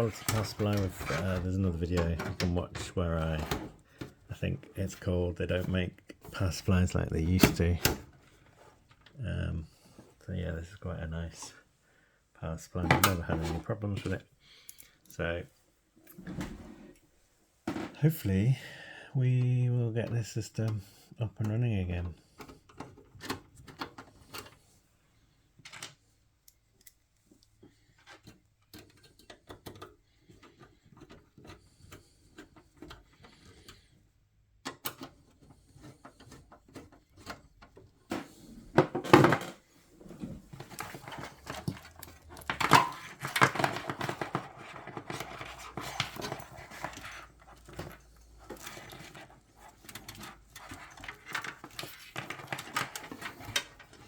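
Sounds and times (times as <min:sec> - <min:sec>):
metal and plastic parts rattling: 0:00.0 - 0:09.2, 0:21.5 - 0:24.7, 0:25.6 - 0:54.0.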